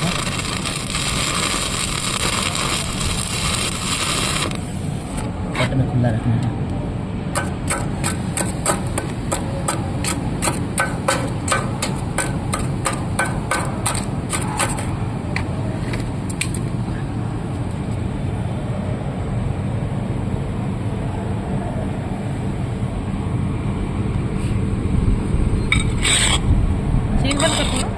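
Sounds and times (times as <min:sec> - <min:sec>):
hammer striking steel: 0:07.3 - 0:15.0.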